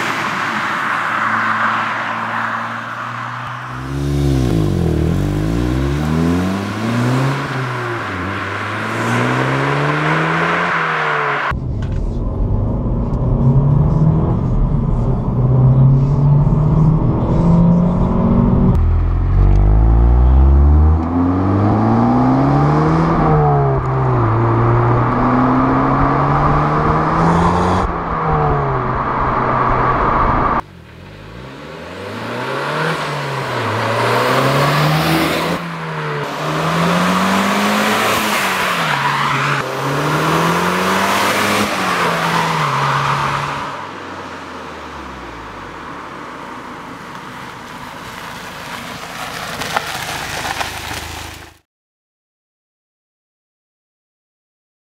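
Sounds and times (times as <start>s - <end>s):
car engine revving through gears: 3.7s - 11.6s, 12.5s - 43.8s.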